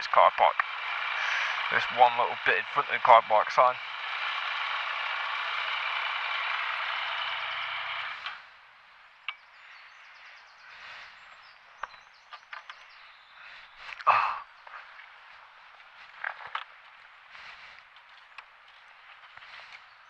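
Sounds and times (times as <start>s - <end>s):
motorcycle engine running: 0.0s - 8.5s.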